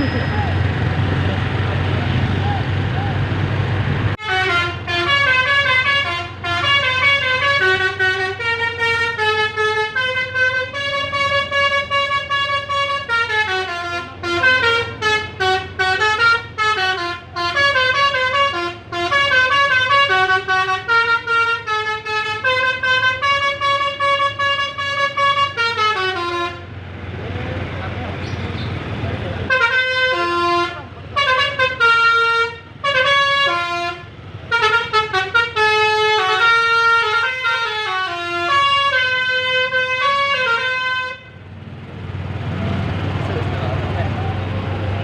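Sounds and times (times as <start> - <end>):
multi-tone bus horn melody: 4.2 - 26.8, 29.4 - 41.5.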